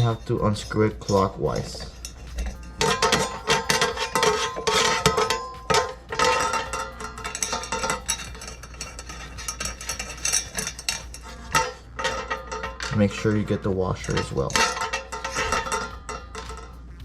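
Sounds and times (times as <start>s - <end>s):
metal parts ringing: 0.0s - 17.0s
wrench clicking on metal: 0.9s - 13.2s.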